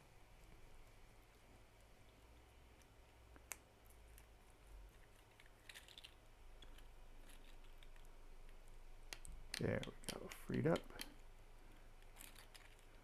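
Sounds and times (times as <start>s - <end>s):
small plastic clicks and snaps: 2.8s - 4.3s, 5.1s - 11.3s.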